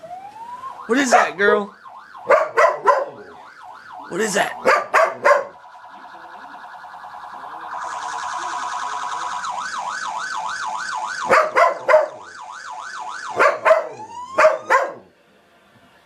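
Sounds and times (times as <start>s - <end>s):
police siren wailing and yelping: 0.0s - 15.1s
dog barking sharply: 2.2s - 3.4s, 4.6s - 5.6s, 11.3s - 12.3s, 13.3s - 15.1s.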